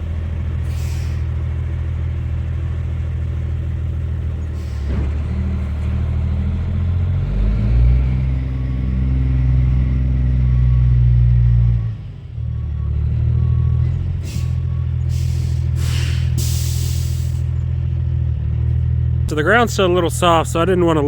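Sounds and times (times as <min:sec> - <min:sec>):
diesel truck engine: 0:00.0 - 0:21.0.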